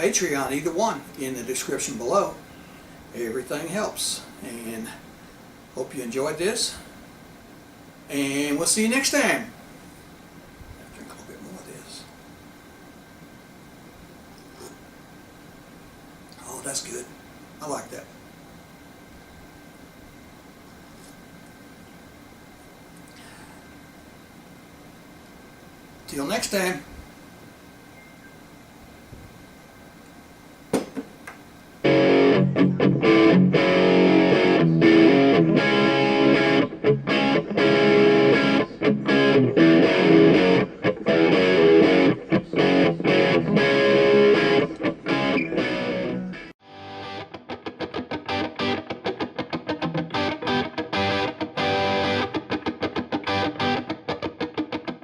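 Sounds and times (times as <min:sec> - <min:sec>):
distorted electric guitar: 0:31.8 - 0:55.0
quickly picked guitar: 0:31.8 - 0:55.0.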